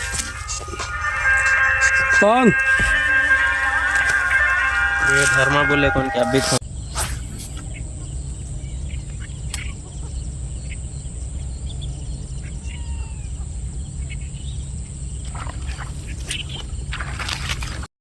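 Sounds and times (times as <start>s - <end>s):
high insect buzz: 0.0s - 7.6s
faint bird chirps: 6.7s - 16.9s.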